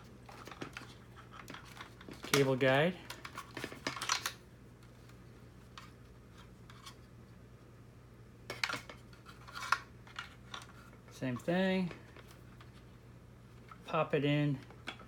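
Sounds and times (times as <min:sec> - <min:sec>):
plastic parts clicking and rustling: 0:00.2 - 0:07.0, 0:08.5 - 0:12.8.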